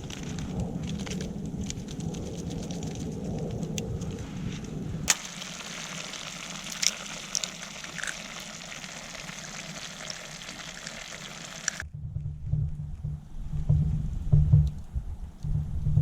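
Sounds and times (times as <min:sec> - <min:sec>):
low rumble: 0:00.0 - 0:05.1, 0:11.8 - 0:16.0
campfire sizzling and crackling: 0:00.0 - 0:11.8
fire popping: 0:00.0 - 0:16.0.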